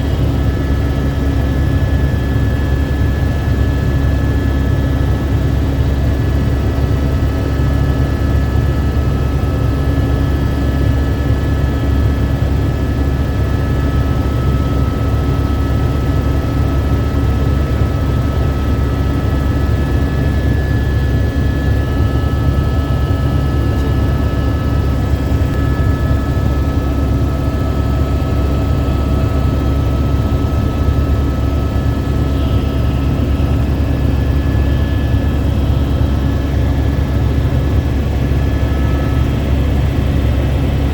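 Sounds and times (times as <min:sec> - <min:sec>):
helicopter turbine and rotor: 0:00.0 - 0:40.9
steady high whine: 0:12.0 - 0:40.9.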